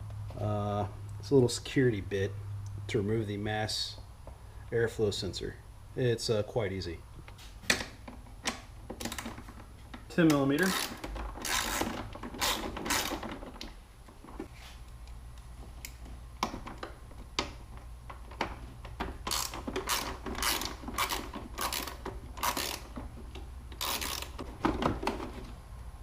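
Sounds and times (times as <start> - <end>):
socket ratchet clicking: 10.3 - 13.2, 19.2 - 23.0, 23.7 - 24.5.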